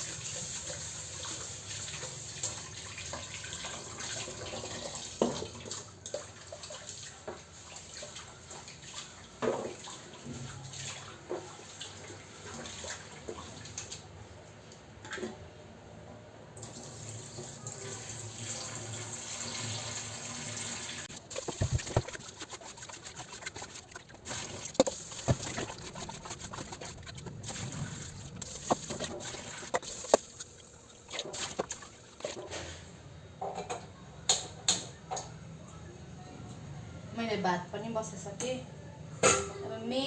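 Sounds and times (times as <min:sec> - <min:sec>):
tap water running into pot: 0:00.0 - 0:10.5, 0:16.6 - 0:32.6
water splashing: 0:21.0 - 0:32.6
pot and utensils clinking: 0:39.2 - 0:39.7.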